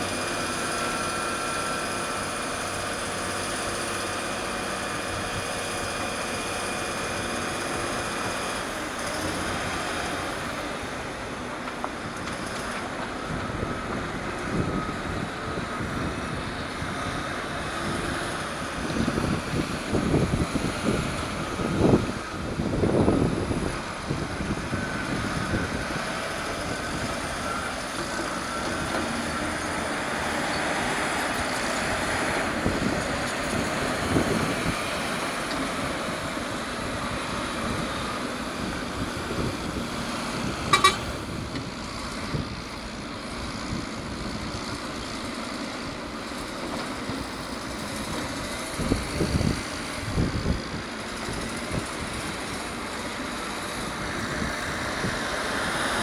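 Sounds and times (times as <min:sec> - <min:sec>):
bulldozer diesel engine under load: 0:00.0 - 0:56.0
short beep: 0:40.7 - 0:41.2.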